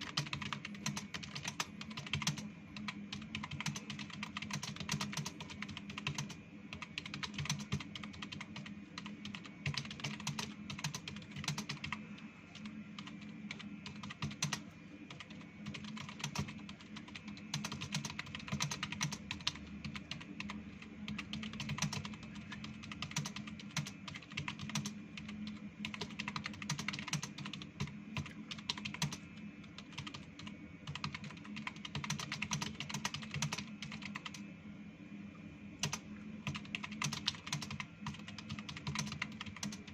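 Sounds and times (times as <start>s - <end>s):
fast keyboard typing: 0.0s - 34.4s, 35.8s - 39.9s.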